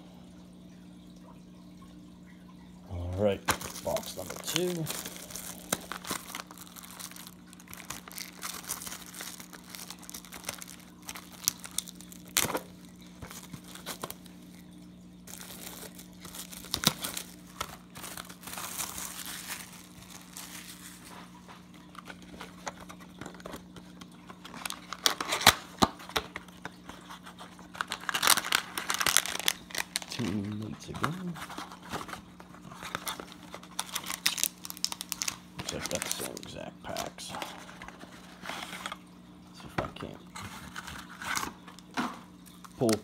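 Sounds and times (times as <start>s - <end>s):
card packs handled with snaps: 3.4s - 14.3s, 15.3s - 21.1s, 21.7s - 39.0s
packaging crinkling and tearing: 3.4s - 43.0s.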